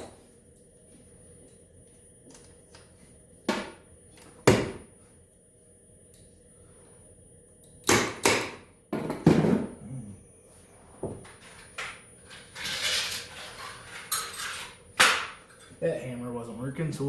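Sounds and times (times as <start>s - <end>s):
metal scraping: 12.3s - 14.7s.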